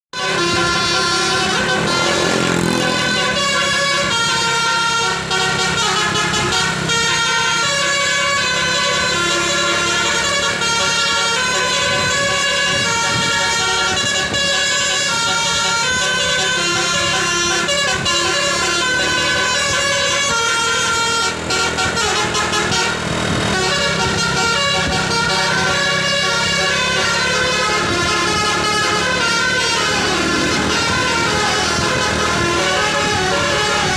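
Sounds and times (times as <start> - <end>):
multi-tone air horn melody: 0.1 - 33.9.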